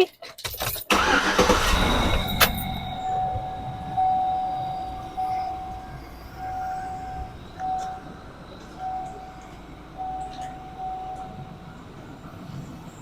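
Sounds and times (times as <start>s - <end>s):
car engine starting and idling: 0.6s - 13.0s
thin high tone: 1.7s - 11.4s.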